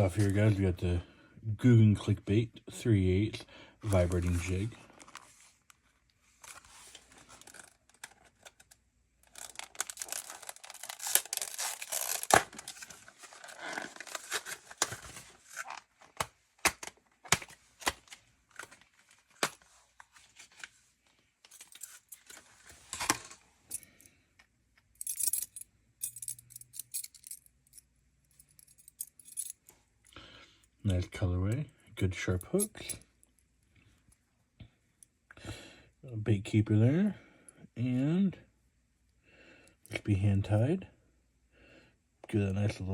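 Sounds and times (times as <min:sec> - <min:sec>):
plastic package crinkling: 0:07.0 - 0:16.2.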